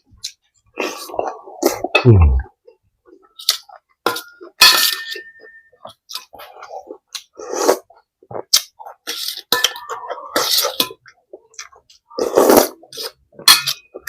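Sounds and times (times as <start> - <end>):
person slurping soup: 0.7 - 2.5, 6.2 - 9.5, 10.1 - 10.8, 11.6 - 13.2.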